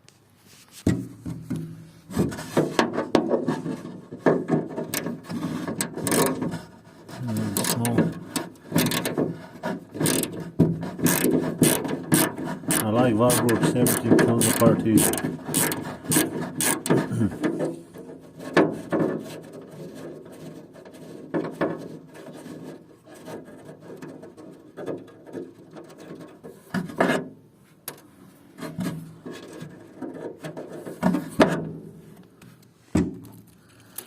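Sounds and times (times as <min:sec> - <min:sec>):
hand tools scraping and rubbing: 0:00.4 - 0:27.2.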